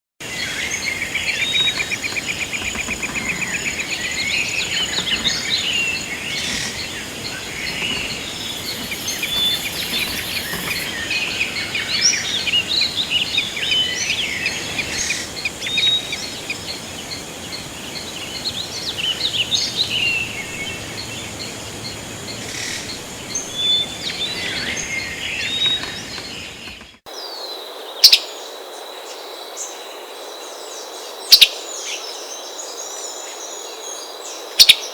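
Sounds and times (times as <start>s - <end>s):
birds singing and calling: 0.2s - 28.2s.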